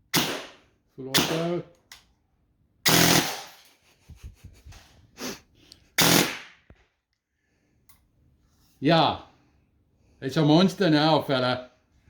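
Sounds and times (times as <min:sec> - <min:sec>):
airsoft gun full-auto bursts: 0:02.9 - 0:03.6, 0:06.0 - 0:06.6.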